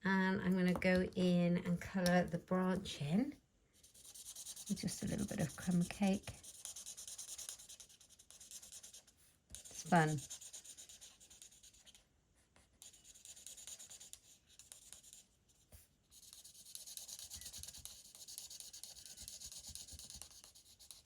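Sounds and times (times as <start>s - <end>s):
marker nib scratching on cardstock: 3.8s - 12.0s, 12.8s - 21.0s.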